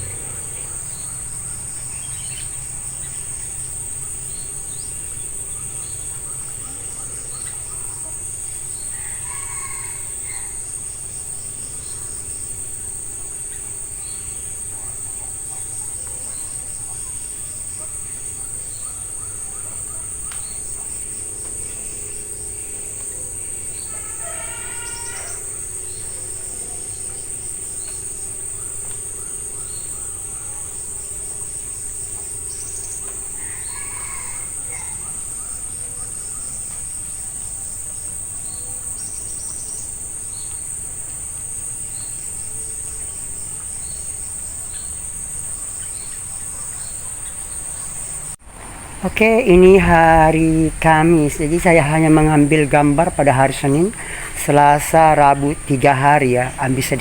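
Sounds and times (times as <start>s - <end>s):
insects trilling: 0.0s - 57.0s.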